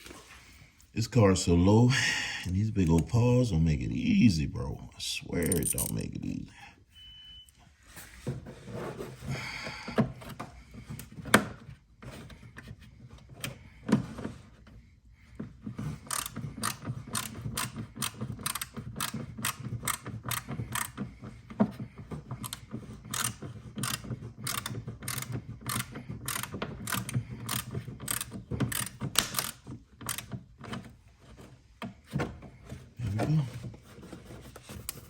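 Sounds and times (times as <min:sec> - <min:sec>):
knocks and handling sounds: 0:05.3 - 0:06.3, 0:07.8 - 0:35.0
ratcheting hand tool clicking: 0:16.1 - 0:21.1, 0:22.4 - 0:30.4.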